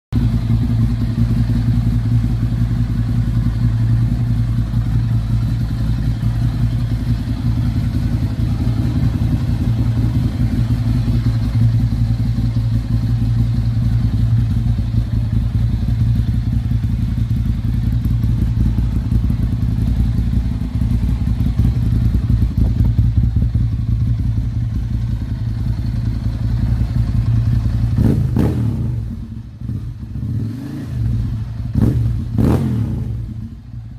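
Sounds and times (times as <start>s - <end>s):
motorcycle engine idling: 0.2s - 33.9s
engine revving: 27.9s - 33.4s.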